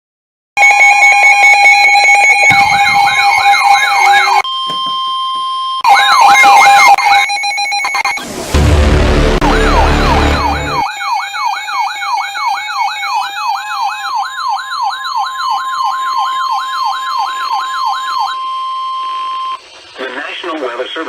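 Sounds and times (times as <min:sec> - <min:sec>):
electronic siren wailing: 0:00.6 - 0:04.4, 0:05.8 - 0:19.6
steady warning alarm tone: 0:00.6 - 0:19.7
loud low rumble: 0:08.3 - 0:10.8.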